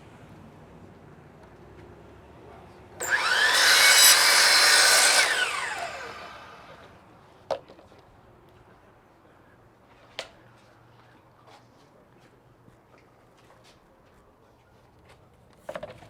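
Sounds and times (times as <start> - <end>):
power saw cutting: 3.0 - 7.0.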